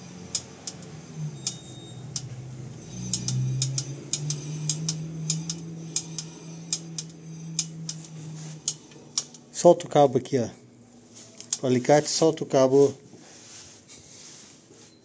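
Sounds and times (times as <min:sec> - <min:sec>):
motorcycle wheel ticking: 0:00.0 - 0:09.5
low steady hum: 0:00.0 - 0:15.0.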